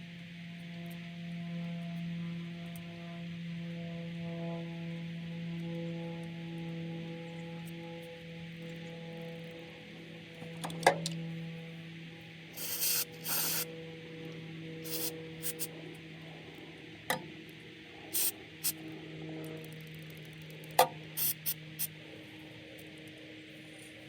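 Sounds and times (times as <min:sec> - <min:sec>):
steady low hum: 0:00.0 - 0:24.0
aerosol spray squirts: 0:12.6 - 0:13.7, 0:14.9 - 0:15.7, 0:18.2 - 0:18.8, 0:21.2 - 0:21.6.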